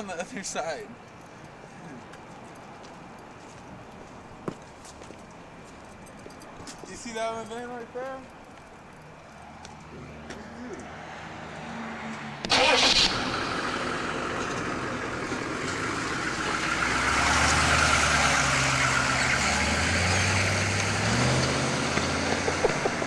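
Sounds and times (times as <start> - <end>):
van engine revving: 11.6 - 23.0.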